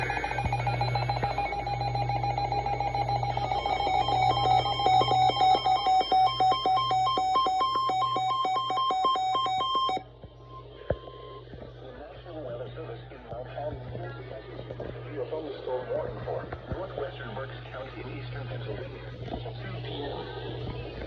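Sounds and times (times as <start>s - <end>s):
electronic alert tone: 0.0s - 10.0s
rapid ticking: 0.0s - 10.0s.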